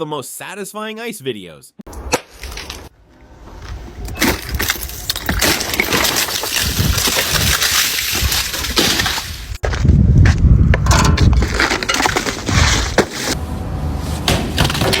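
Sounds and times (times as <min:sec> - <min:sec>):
ice cracking and crunching: 0:04.2 - 0:09.8, 0:11.1 - 0:13.3.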